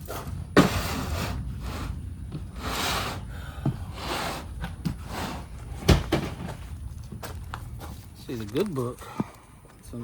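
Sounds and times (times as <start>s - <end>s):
books rustling and sliding in box: 3.9s - 5.5s.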